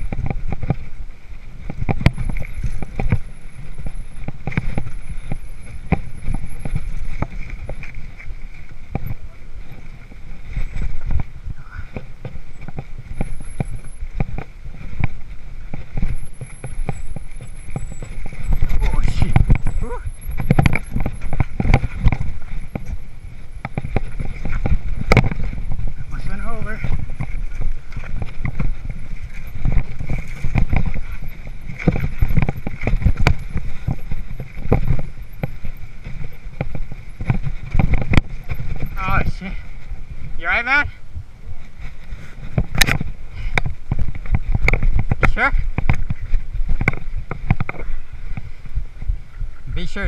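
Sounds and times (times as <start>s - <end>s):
bike chain and frame rattling: 0.0s - 50.0s
tyre and wind rumble: 0.0s - 50.0s.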